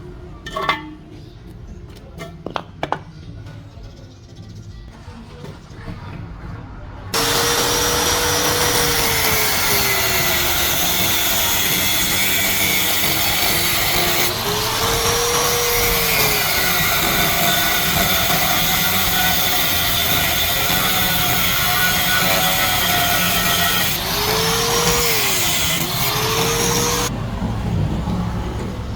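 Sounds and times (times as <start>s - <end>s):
motor running loudly: 7.2s - 27.1s.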